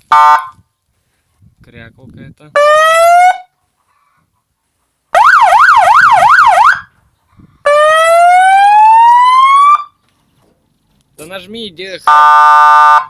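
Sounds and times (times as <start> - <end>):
electronic siren yelp: 2.6 - 3.5, 5.2 - 6.9, 7.7 - 10.0, 12.0 - 13.0
electronic siren wail: 5.2 - 6.9, 7.7 - 9.9, 12.1 - 13.0.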